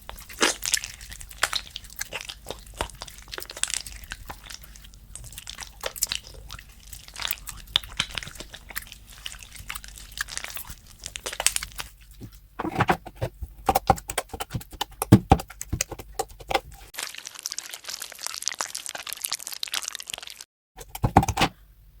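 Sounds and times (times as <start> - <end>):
slime crackling and popping: 0.0 - 12.0, 17.0 - 20.4.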